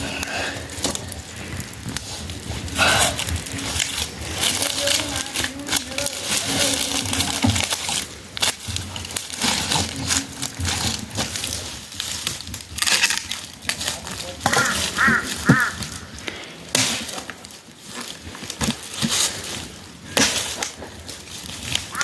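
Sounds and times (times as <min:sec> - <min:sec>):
dry material crackling and crunching: 0:00.0 - 0:22.0.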